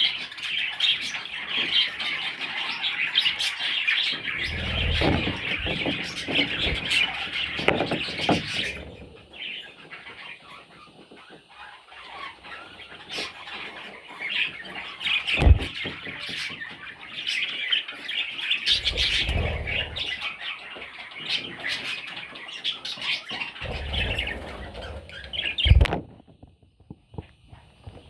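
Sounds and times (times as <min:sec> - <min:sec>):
budgies chirping and chattering: 0:00.0 - 0:26.0
sharp low thumps: 0:04.4 - 0:07.8, 0:15.4 - 0:15.8.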